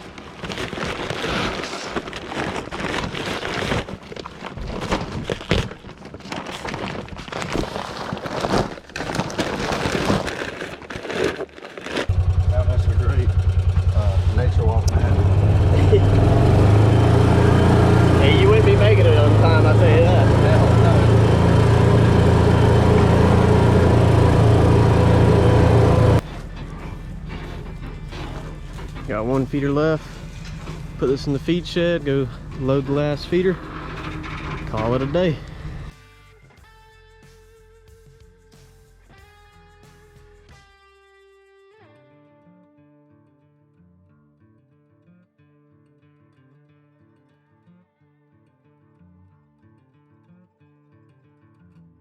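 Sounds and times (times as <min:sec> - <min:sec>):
vehicle engine running: 0:12.1 - 0:35.9.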